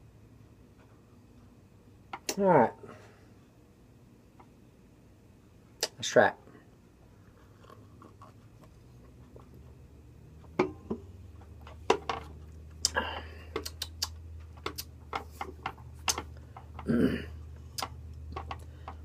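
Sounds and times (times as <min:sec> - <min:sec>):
mouth clicks and lip smacks: 0:12.7 - 0:15.0.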